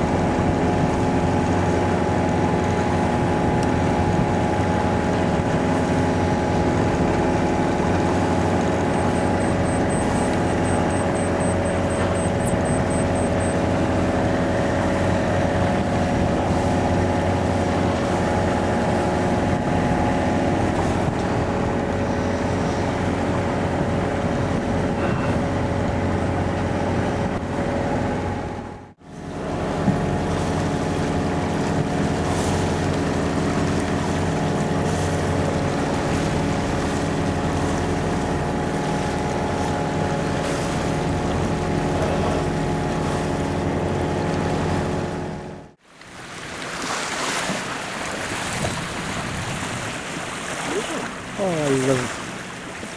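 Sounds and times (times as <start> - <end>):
boat engine humming: 0.0 - 52.9
water noise: 0.0 - 52.9
wind noise: 48.3 - 50.1.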